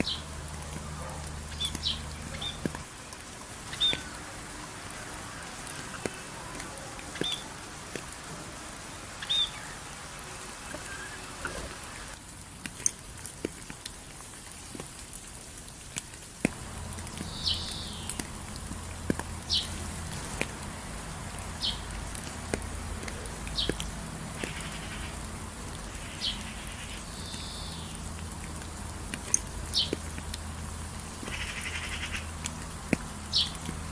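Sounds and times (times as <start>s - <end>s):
water drip clicks: 0.0s - 9.7s, 10.6s - 33.9s
rain patter: 0.0s - 33.9s
high bird chirps: 9.2s - 9.8s, 16.6s - 18.3s, 21.5s - 22.0s, 26.0s - 28.0s
low hum: 16.5s - 33.9s.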